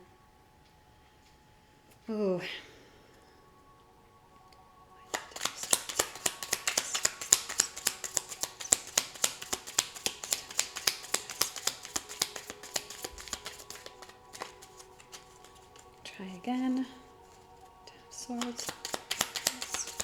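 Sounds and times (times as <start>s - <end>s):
cards being shuffled: 5.1s - 16.4s, 18.3s - 20.0s.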